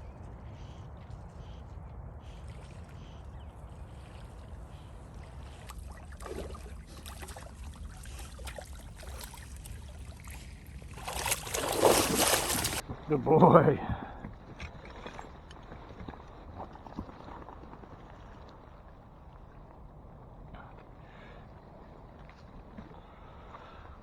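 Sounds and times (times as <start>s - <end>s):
dog splashing through water: 5.2s - 13.0s.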